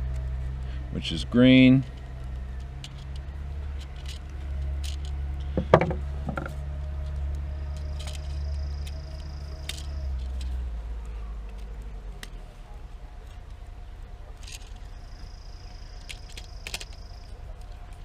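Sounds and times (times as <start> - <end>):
tools clicking and knocking: 2.4 - 10.6, 16.0 - 18.0.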